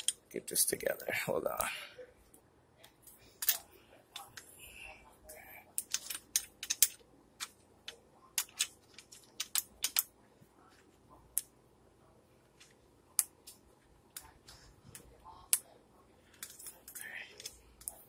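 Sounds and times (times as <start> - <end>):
parts clicking together: 5.8 - 10.1.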